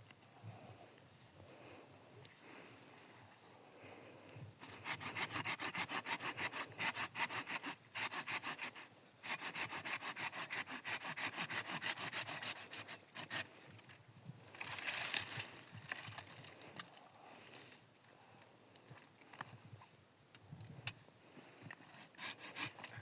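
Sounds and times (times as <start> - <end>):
hand saw cutting wood: 4.6 - 13.5, 21.9 - 23.0.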